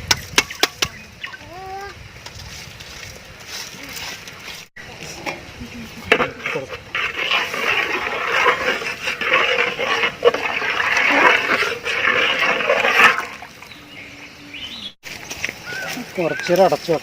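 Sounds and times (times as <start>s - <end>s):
pot of water boiling: 4.8s - 13.8s.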